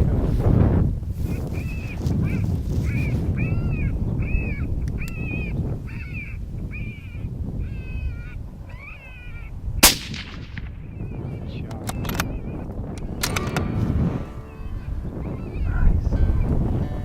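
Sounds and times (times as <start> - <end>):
wind rumbling on microphone: 0.0 - 17.0
rifle shot: 9.8 - 10.9
sharp clicks: 11.7 - 13.8.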